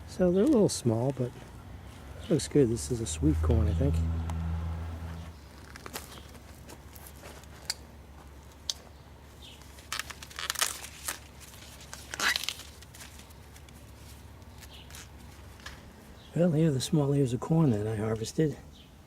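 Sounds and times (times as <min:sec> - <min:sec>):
corn leaves rustling and crackling: 0:05.4 - 0:07.8, 0:09.5 - 0:15.8.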